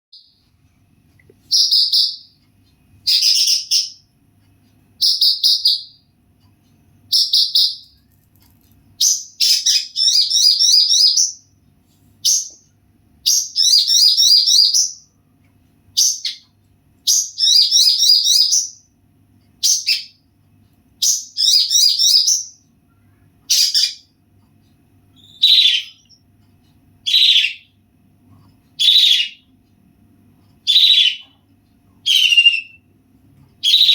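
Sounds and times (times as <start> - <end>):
songbird singing: 1.5 - 2.4, 3.0 - 4.1, 5.0 - 6.1, 7.1 - 8.1, 9.0 - 11.5, 12.2 - 15.1, 16.0 - 18.9, 19.6 - 20.2, 21.0 - 24.1, 25.1 - 26.3, 27.0 - 27.8, 28.8 - 29.5, 30.6 - 31.4, 32.0 - 32.9, 33.6 - 33.9.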